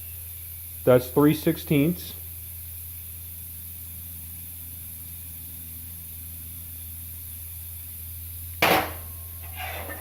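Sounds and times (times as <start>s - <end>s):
low hum with hiss: 0.0s - 10.0s
steel plate clanking: 8.6s - 10.0s.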